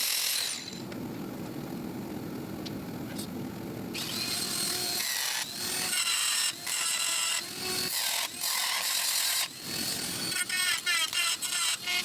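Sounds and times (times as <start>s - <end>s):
angle grinder cutting metal: 0.0s - 0.8s, 4.0s - 12.0s.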